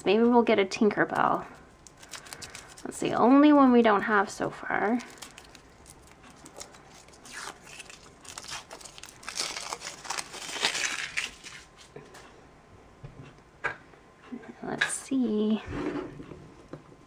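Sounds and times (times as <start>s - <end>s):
wrapper crinkling and tearing: 1.8s - 3.0s, 4.8s - 11.8s.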